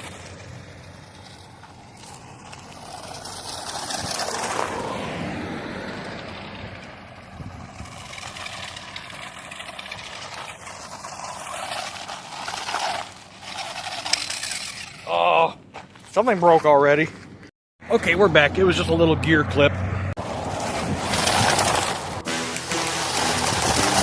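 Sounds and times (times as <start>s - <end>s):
toy truck motor and gears: 0.0s - 4.7s, 7.3s - 15.3s, 20.5s - 24.0s.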